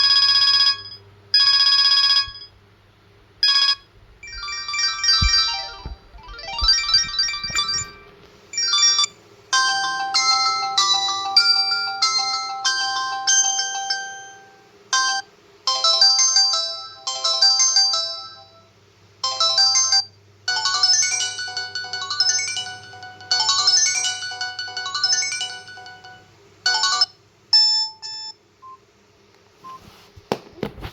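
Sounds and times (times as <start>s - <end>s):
faint steady hum: 0.0s - 30.9s
phone ringtone melody: 3.5s - 28.3s.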